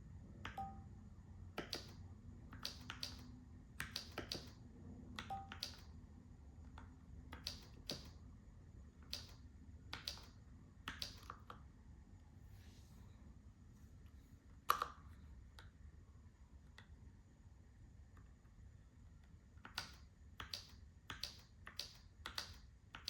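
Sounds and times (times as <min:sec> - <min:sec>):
mechanical keyboard keystrokes: 0:01.6 - 0:04.6, 0:05.2 - 0:05.9, 0:07.3 - 0:08.2, 0:09.1 - 0:11.5, 0:19.6 - 0:23.0.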